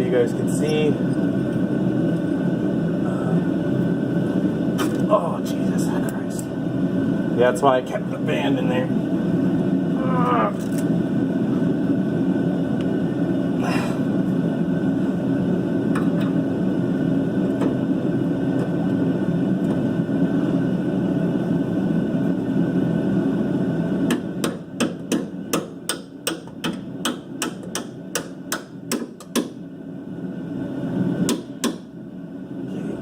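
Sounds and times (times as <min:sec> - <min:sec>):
steady low rumble: 0:00.0 - 0:24.8.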